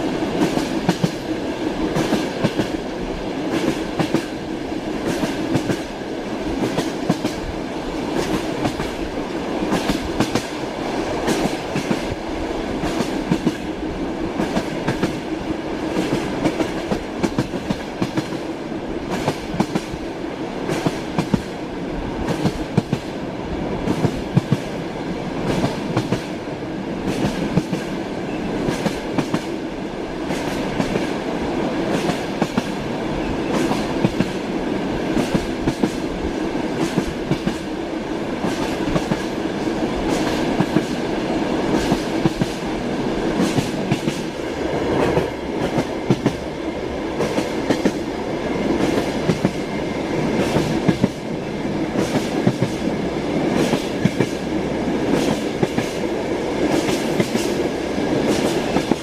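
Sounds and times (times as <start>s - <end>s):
train wheels clattering: 43.4s - 46.5s.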